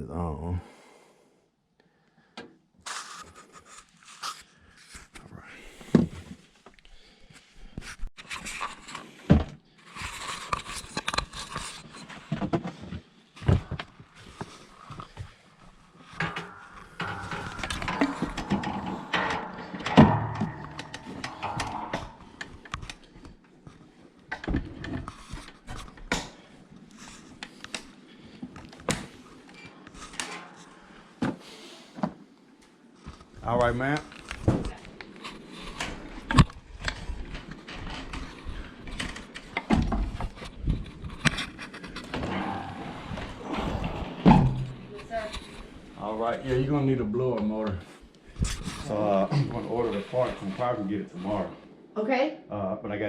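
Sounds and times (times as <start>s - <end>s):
knocks and thumps of handling: 7.8s - 26.4s.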